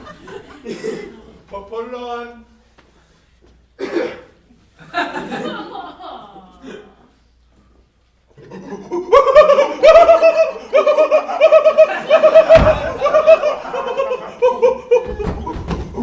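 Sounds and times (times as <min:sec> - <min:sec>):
audience laughing: 0:00.0 - 0:01.4, 0:04.8 - 0:07.1, 0:08.3 - 0:16.0
thump: 0:12.5 - 0:13.2, 0:15.0 - 0:16.0.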